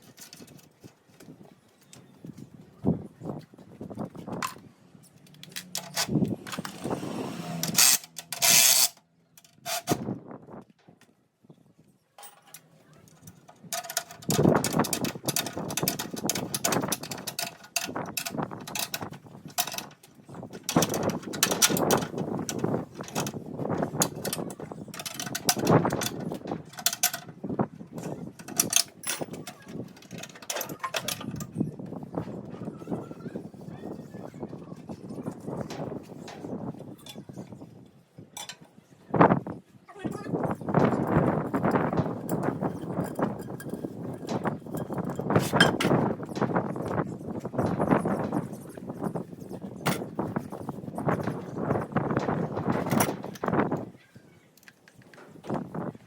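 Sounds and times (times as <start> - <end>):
metal tools clanking: 4.4 - 10.0, 12.2 - 27.4, 28.0 - 31.6, 40.4 - 53.8.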